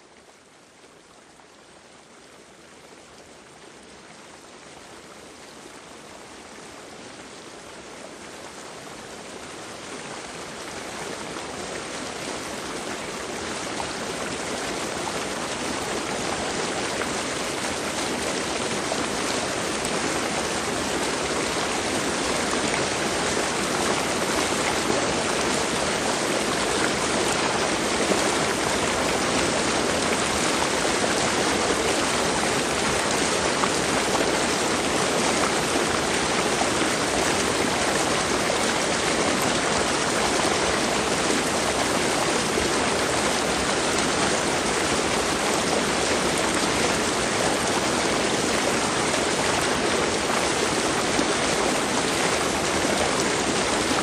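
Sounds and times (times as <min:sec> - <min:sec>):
running water: 0:02.1 - 0:54.0.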